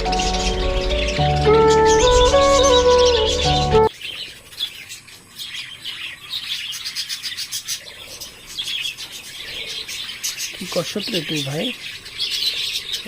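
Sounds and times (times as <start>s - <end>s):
background music: 0.0s - 3.9s
budgerigars chirping and chattering: 0.0s - 13.0s.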